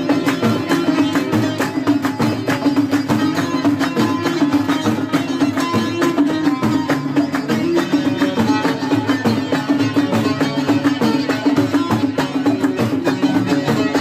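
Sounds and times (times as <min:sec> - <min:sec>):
fast percussive beat: 0:00.0 - 0:14.0
plucked string instruments: 0:00.0 - 0:14.0.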